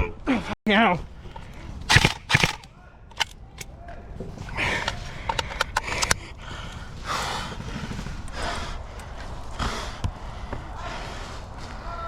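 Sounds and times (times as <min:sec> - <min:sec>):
sharp clicks: 0:01.3 - 0:03.7, 0:04.8 - 0:06.2
person breathing hard: 0:04.5 - 0:11.8.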